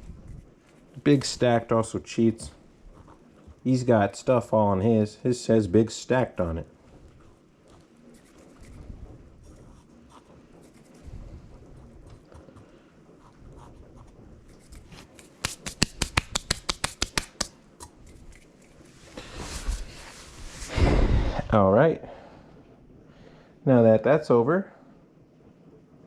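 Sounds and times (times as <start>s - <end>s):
rustling hiss: 18.5s - 21.4s.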